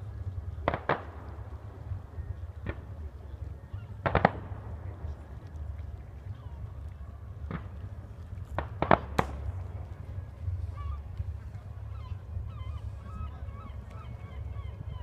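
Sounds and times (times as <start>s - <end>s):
steady low rumble: 0.0s - 15.0s
firework bangs: 4.0s - 4.8s.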